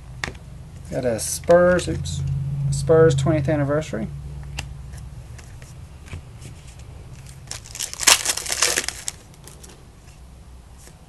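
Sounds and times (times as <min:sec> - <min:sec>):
wrapper tearing and crinkling: 0:07.2 - 0:09.8.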